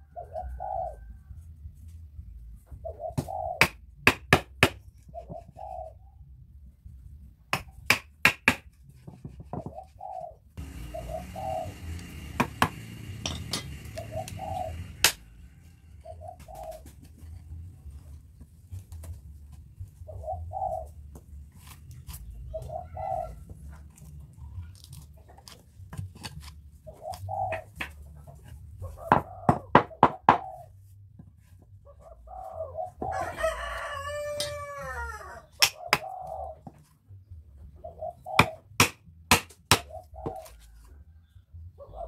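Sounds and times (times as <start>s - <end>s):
doves cooing: 0.0s - 1.4s, 2.6s - 3.8s, 5.0s - 6.2s, 9.5s - 18.2s, 19.8s - 21.3s, 22.2s - 25.4s, 26.8s - 36.8s, 37.6s - 38.8s, 39.7s - 42.0s
mallet striking chisel into wood: 3.6s - 4.8s, 7.5s - 9.7s, 12.3s - 13.8s, 38.4s - 39.9s
rooster crowing: 33.0s - 35.6s.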